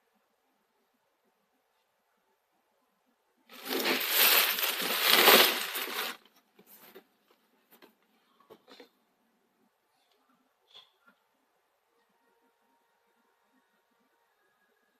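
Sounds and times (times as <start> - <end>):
packaging crinkling and rustling: 3.5 - 6.3.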